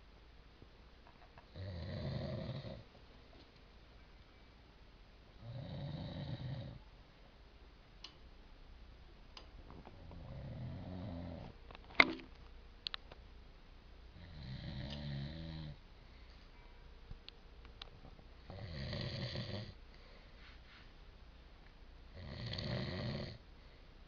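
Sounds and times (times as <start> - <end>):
man snoring: 1.5 - 2.8, 5.4 - 6.8, 10.2 - 11.5, 14.2 - 15.8, 18.5 - 19.8, 22.1 - 23.4.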